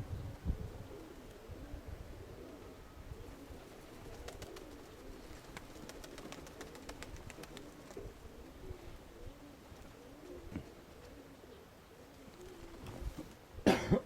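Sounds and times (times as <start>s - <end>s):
wind rumbling on microphone: 0.0s - 4.2s
pigeons cooing: 0.0s - 14.0s.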